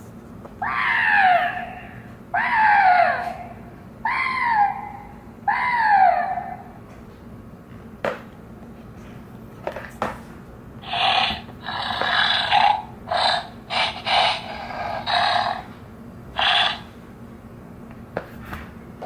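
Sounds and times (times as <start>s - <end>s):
dinosaur growl from small speaker: 10.8s - 15.7s, 16.4s - 16.9s.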